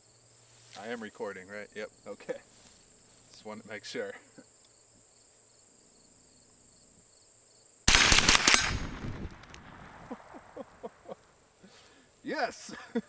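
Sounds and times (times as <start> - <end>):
rifle shots: 7.9 - 11.2.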